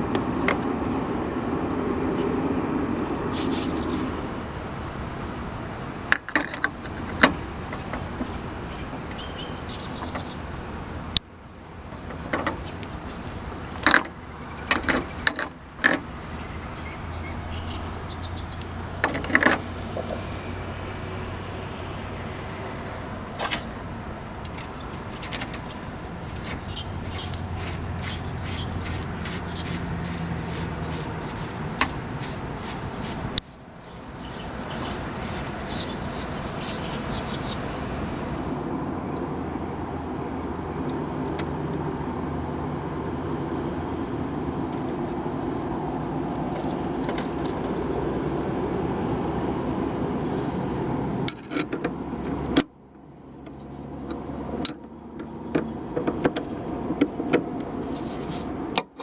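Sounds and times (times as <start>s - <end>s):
car road and engine noise: 0.0s - 59.0s
light rattles and clicks: 3.0s - 10.4s, 11.9s - 16.8s, 18.1s - 38.6s, 53.3s - 59.0s.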